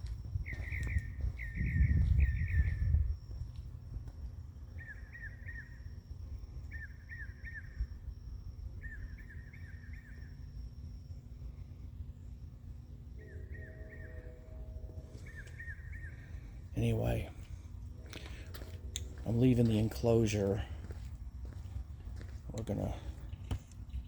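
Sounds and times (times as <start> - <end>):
low rumble: 0.0 - 4.9
thin steady high tone: 0.0 - 23.3
bird calling: 0.4 - 3.0, 4.7 - 6.0, 6.6 - 8.0, 8.8 - 10.5, 13.2 - 18.6.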